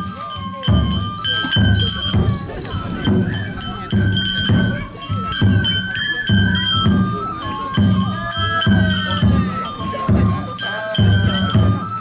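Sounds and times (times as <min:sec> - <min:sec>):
bamboo flute melody: 0:00.0 - 0:12.0
taiko drum strokes: 0:00.3 - 0:11.8.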